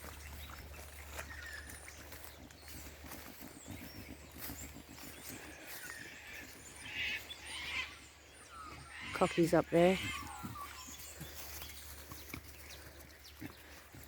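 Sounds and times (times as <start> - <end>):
birds chirping and whistling: 0.0 - 14.0.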